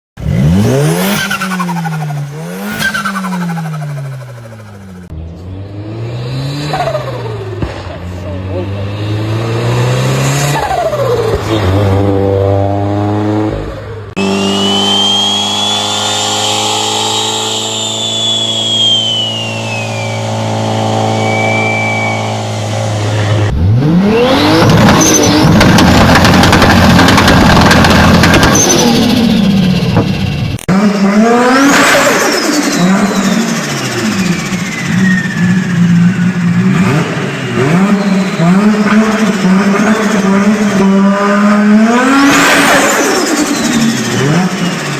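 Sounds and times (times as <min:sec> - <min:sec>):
turbocharged car engines revving: 0:00.2 - 0:44.9
turbo whistle: 0:14.2 - 0:23.0.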